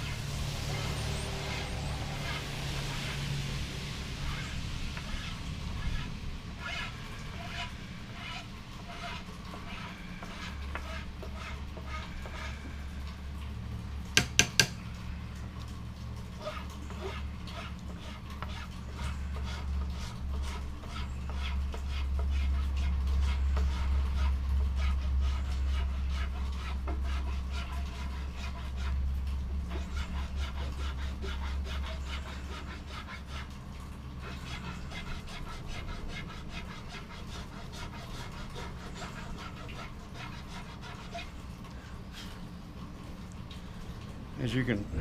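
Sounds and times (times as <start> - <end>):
loud low steady hum: 0.0 - 8.0
hand file rasping on wood: 6.6 - 12.8, 16.4 - 29.0, 29.7 - 33.6, 34.2 - 41.4.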